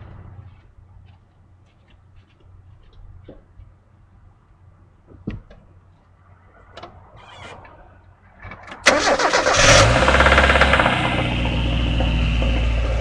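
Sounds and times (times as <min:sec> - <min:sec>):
car engine starting and running rough: 0:08.8 - 0:13.0.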